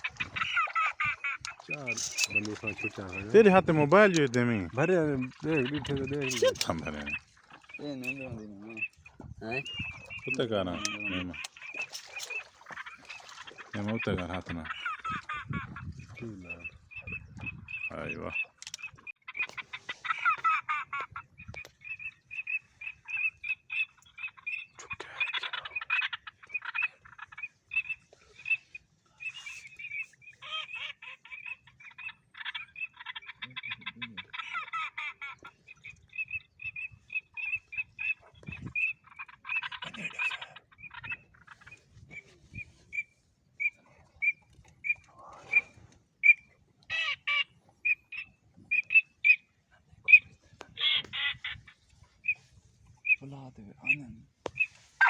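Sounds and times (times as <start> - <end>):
fast chattering animal calls: 0.0 - 15.9, 22.8 - 28.6
high-pitched animal calls: 5.2 - 9.0.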